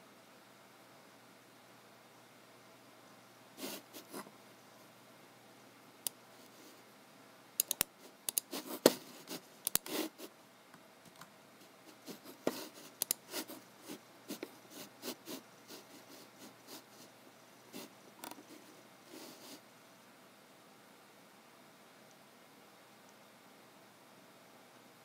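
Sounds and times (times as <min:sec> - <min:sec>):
mouse and keyboard clicks: 0:07.6 - 0:09.0, 0:09.6 - 0:10.0, 0:12.4 - 0:13.2, 0:18.2 - 0:18.4.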